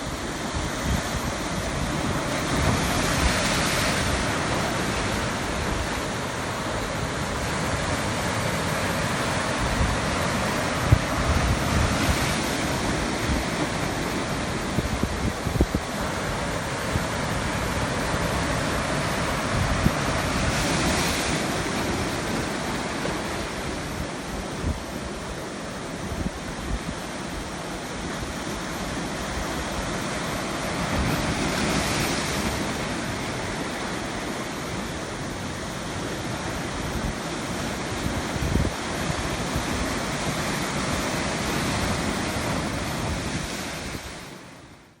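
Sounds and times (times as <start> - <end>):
ocean waves breaking: 0.0 - 45.0.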